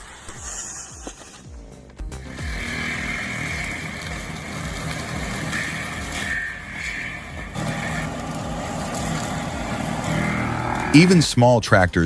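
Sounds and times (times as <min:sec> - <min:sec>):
wood-processing machine whining: 0:02.2 - 0:11.3.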